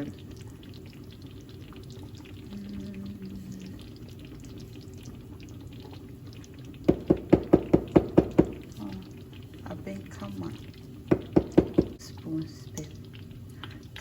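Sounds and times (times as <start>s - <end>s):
faint steady background noise: 0.0s - 14.0s
sharp rapid knocks: 6.9s - 8.8s, 11.1s - 12.0s.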